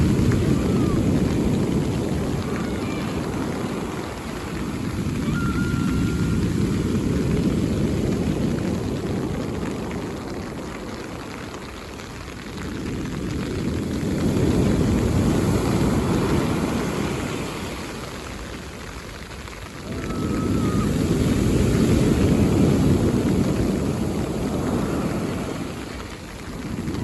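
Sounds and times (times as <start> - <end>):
sea waves breaking on shore: 0.0 - 27.0.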